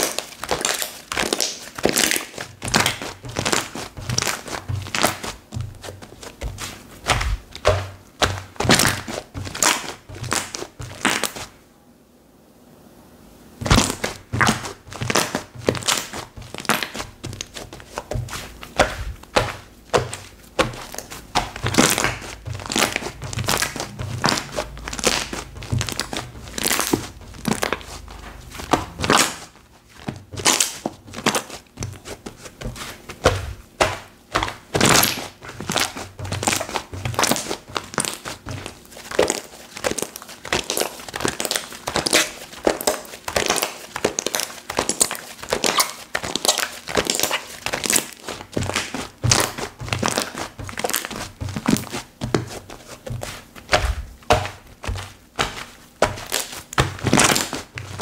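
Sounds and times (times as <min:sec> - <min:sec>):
slime squeezed crinkling pops: 0:06.9 - 0:11.5, 0:13.6 - 0:29.6, 0:33.2 - 0:52.4, 0:53.1 - 0:58.0.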